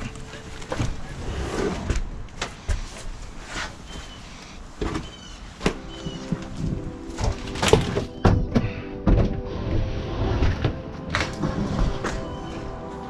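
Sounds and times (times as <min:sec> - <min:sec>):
heavy items knocking and scraping: 0:04.8 - 0:13.0.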